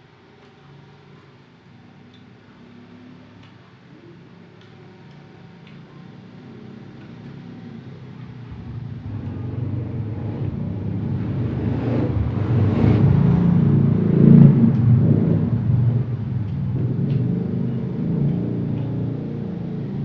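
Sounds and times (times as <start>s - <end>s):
vehicle engine passing by: 6.2s - 20.0s.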